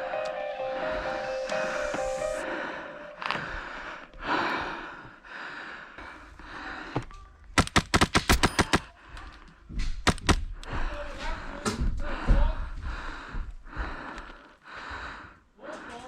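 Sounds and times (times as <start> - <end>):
airsoft rifle shots: 7.6 - 8.9, 10.0 - 10.4.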